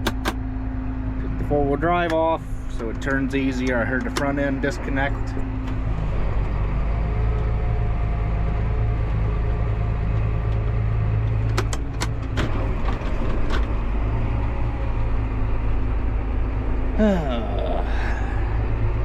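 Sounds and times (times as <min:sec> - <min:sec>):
sharp clicks: 0:00.0 - 0:00.4
tractor diesel engine running: 0:00.0 - 0:19.0.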